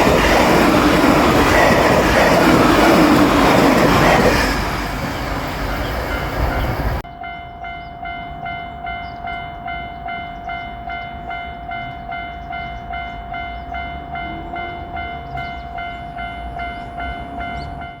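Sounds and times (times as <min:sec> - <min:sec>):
level-crossing electronic warning bell: 0:05.6 - 0:18.0.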